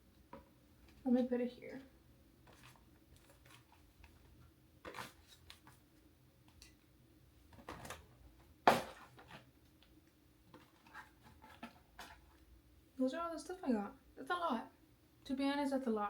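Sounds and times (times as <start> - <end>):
packaging clicks and rustles: 2.5 - 5.8.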